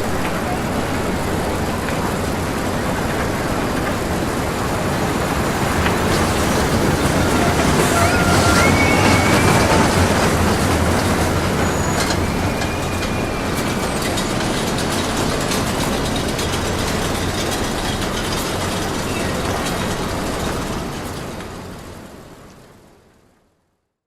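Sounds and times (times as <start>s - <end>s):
roller coaster rumbling and rattling: 0.0s - 22.8s
faint high squeal: 7.0s - 10.2s, 11.4s - 14.4s.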